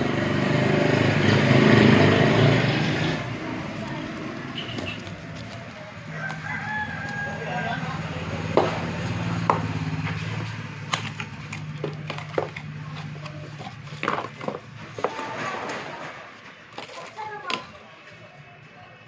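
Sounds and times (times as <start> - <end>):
phone packaging being handled: 3.7 - 7.7, 10.2 - 16.0, 16.6 - 17.8.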